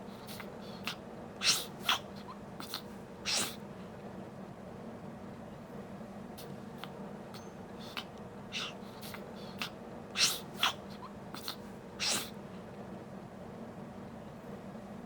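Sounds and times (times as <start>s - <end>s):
steady low hum: 0.0s - 15.0s
baby sneezing: 1.4s - 2.0s, 2.6s - 3.6s, 10.2s - 10.8s, 11.4s - 12.3s
faint sniffs: 7.8s - 12.4s.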